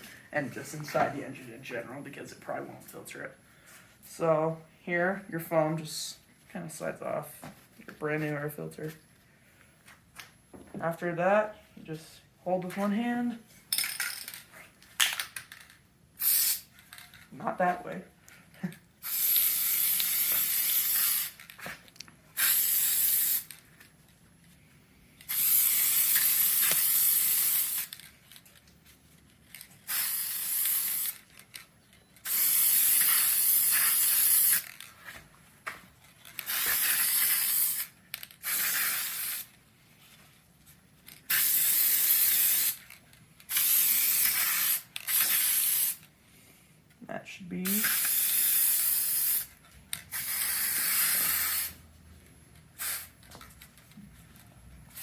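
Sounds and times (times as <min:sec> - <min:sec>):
aerosol can spraying: 0:16.2 - 0:16.7, 0:19.0 - 0:21.4, 0:22.4 - 0:23.6, 0:25.3 - 0:27.9, 0:29.8 - 0:31.2, 0:32.2 - 0:34.7, 0:36.4 - 0:39.5, 0:41.3 - 0:42.8, 0:43.5 - 0:46.0, 0:47.8 - 0:49.5, 0:50.1 - 0:51.9, 0:52.8 - 0:53.2.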